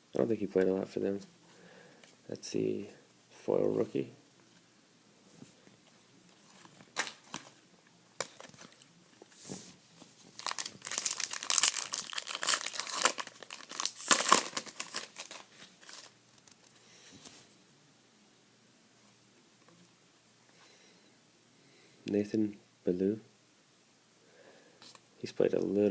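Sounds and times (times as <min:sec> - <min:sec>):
wrapper tearing and crinkling: 0:10.3 - 0:16.7.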